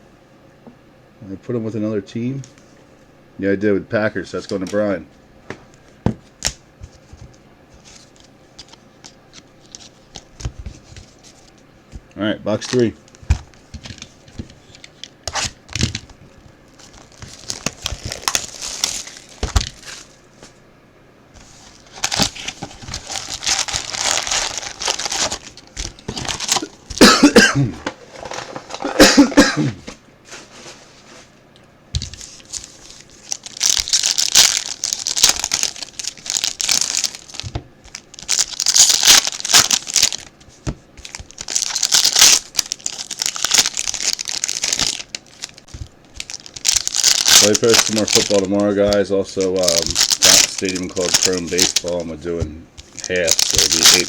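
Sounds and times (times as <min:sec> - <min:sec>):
plastic wrapping crinkling: 0:12.5 - 0:20.2, 0:21.4 - 0:27.3, 0:32.0 - 0:54.0.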